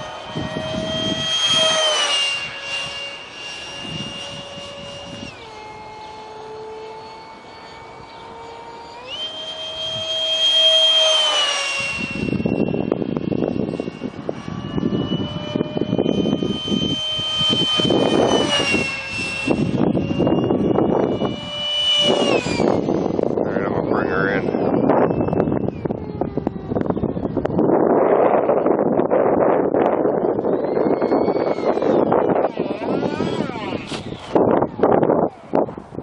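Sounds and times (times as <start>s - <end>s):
rough rushing noise: 0.0s - 6.4s, 9.1s - 26.0s
electric ducted fan whining: 0.0s - 36.0s.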